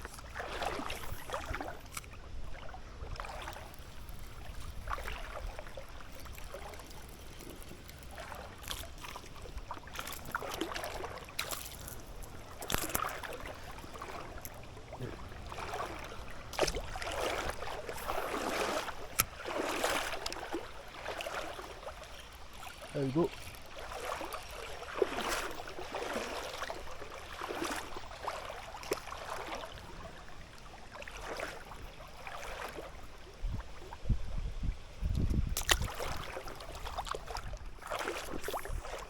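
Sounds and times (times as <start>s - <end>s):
river water rushing: 4.8s - 29.7s.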